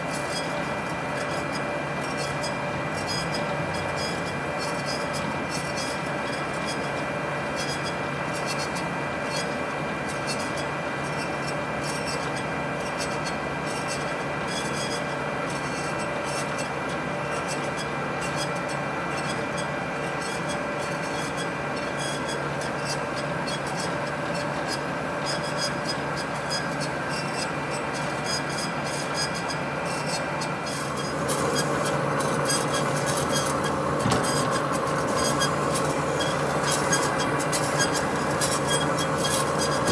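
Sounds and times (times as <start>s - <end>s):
band saw running: 28.4s - 39.9s.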